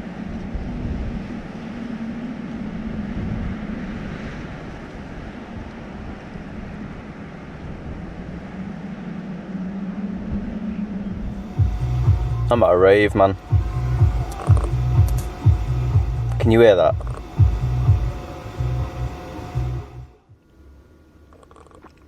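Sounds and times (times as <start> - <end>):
noise wash: 0.0 - 22.0
car engine idling: 11.2 - 20.8.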